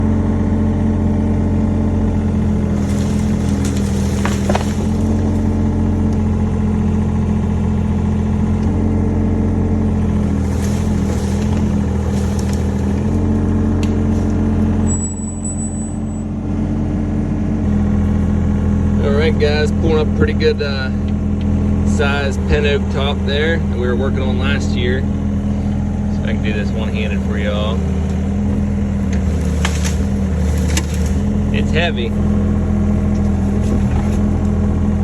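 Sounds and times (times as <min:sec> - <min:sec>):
excavator diesel engine running: 0:00.0 - 0:35.0.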